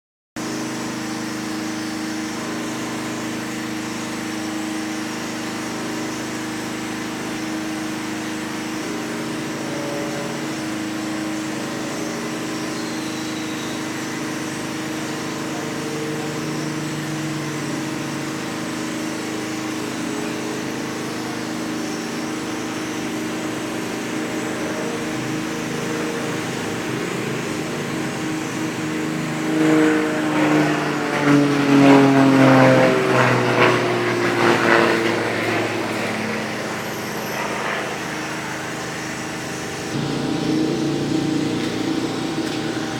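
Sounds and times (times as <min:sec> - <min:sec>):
motor humming: 0:00.4 - 0:42.9.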